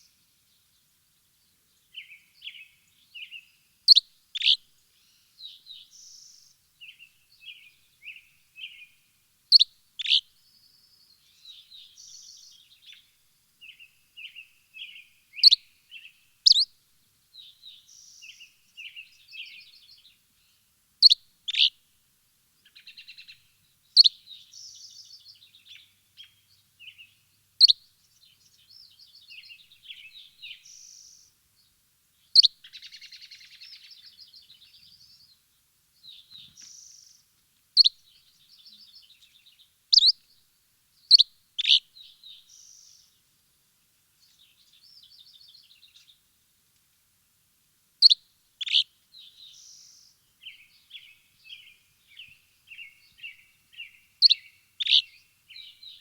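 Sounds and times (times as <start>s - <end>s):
loud sharp bird chirps: 16.5s - 16.7s, 39.9s - 40.2s, 41.1s - 43.0s, 48.0s - 56.0s
soft bird twittering: 37.8s - 40.2s, 41.1s - 43.2s, 48.0s - 56.0s.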